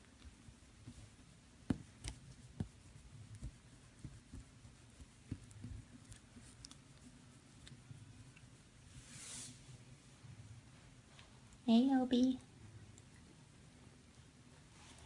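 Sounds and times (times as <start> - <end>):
soft taps and clicks: 1.6 - 6.8.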